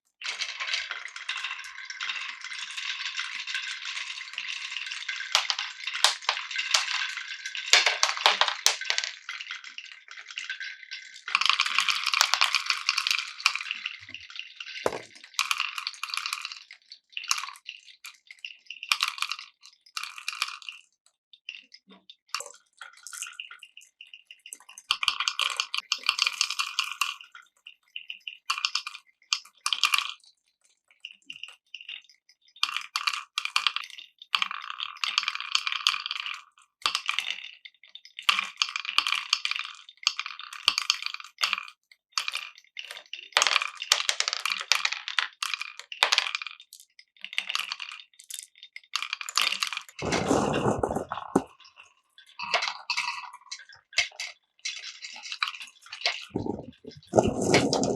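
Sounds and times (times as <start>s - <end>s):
marbles rolling through wooden blocks: 0.2s - 16.6s, 32.6s - 37.6s, 38.2s - 51.8s, 52.4s - 57.9s.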